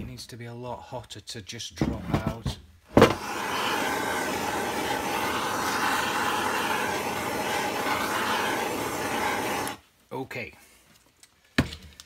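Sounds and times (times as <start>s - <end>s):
heating tool rushing: 3.0s - 9.8s.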